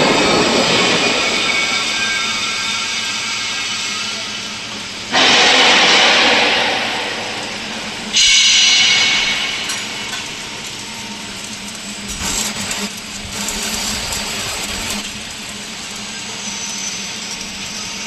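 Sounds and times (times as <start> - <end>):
steady machine hum: 0.0 - 18.0
power tool harsh noise bursts: 12.0 - 15.0.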